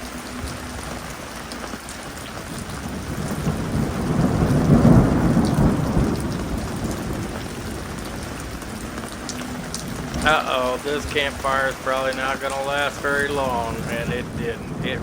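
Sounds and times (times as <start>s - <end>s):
steady rain: 0.0s - 15.0s
thunder rolling: 2.5s - 15.0s.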